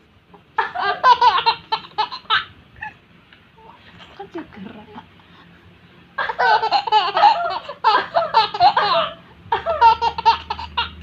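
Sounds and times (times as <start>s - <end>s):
baby laughing: 0.6s - 3.0s, 6.2s - 11.0s.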